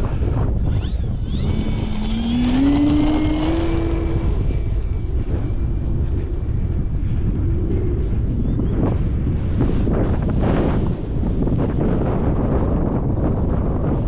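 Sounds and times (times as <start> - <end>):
model plane motor whining: 0.0 - 7.6
wind buffeting on microphone: 0.0 - 14.0.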